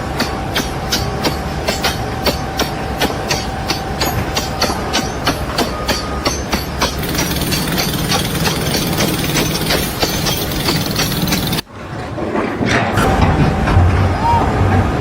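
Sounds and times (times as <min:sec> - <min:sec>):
mechanical clicking and knocking: 0:03.0 - 0:11.7.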